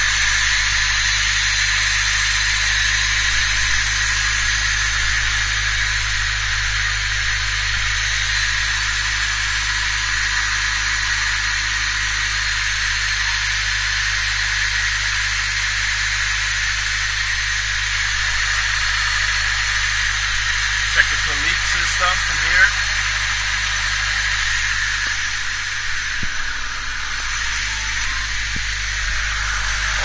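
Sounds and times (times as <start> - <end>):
car engine idling: 0.0 - 30.0
airy intake hiss: 17.0 - 30.0.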